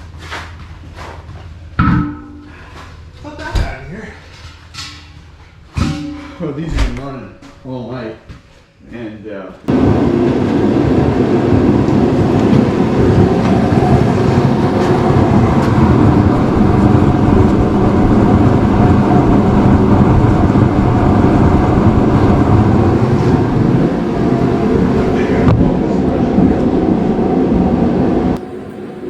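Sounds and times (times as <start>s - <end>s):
space heater running: 9.0s - 29.0s.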